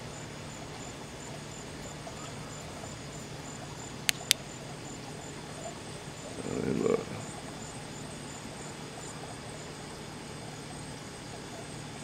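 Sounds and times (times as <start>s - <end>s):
insects chirping: 0.0s - 12.0s
flashlight switch clicks: 4.1s - 4.4s.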